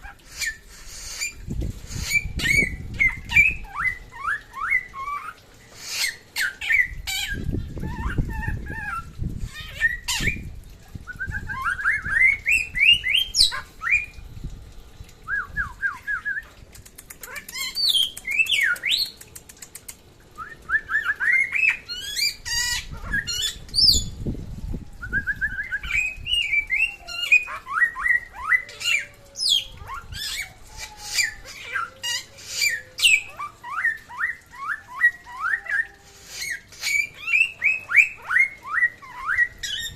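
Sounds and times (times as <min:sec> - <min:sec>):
songbird singing chirps: 0:00.0 - 0:39.9.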